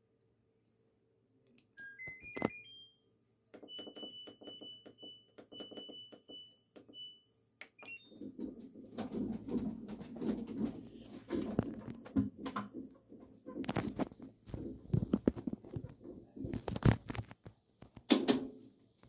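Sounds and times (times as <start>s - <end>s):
washing machine beeping tune: 1.8s - 8.4s.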